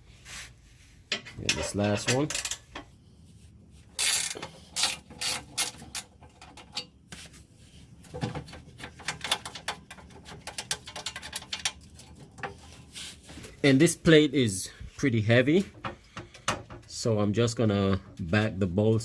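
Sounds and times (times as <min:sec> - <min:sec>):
hand ratchet clicking: 0:04.0 - 0:06.0.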